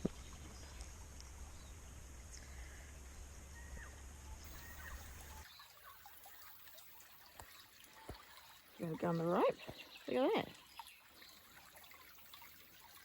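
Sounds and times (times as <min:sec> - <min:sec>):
stream trickling: 0:04.4 - 0:13.0.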